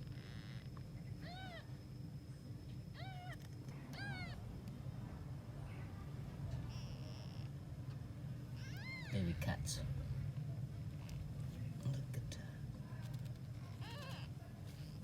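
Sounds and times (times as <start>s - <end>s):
kittens mewing: 3.0s - 4.4s.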